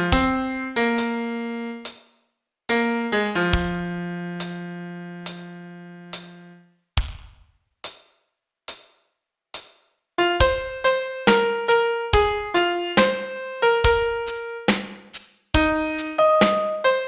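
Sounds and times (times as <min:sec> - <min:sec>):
slow piano melody: 0:00.0 - 0:01.8, 0:02.7 - 0:06.6, 0:10.2 - 0:14.8, 0:15.6 - 0:17.0.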